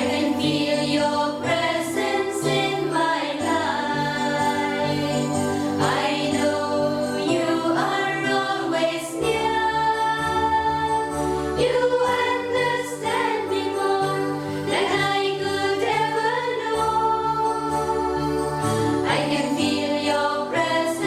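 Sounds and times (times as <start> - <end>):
bell-like instrumental accompaniment: 0.0 - 21.0
voices singing a hymn: 0.0 - 21.0.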